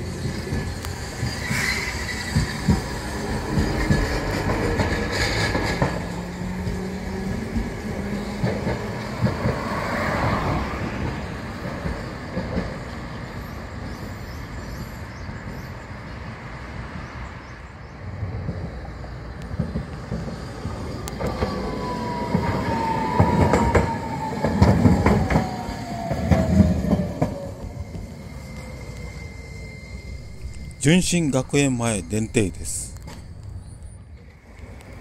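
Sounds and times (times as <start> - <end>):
wheel squeals: 0.0 - 9.1, 20.1 - 30.8
tram wheels knocking on rail joints: 0.0 - 13.0, 18.3 - 28.2.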